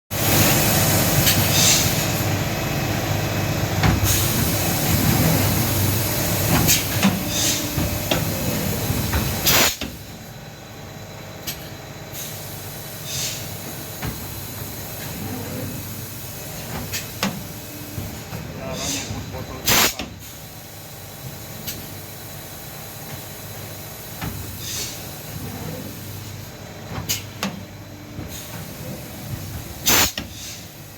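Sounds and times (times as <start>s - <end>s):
blow moulding machine running: 0.2s - 30.9s
compressed air hisses: 0.6s - 2.1s, 12.2s - 13.6s, 29.8s - 30.8s.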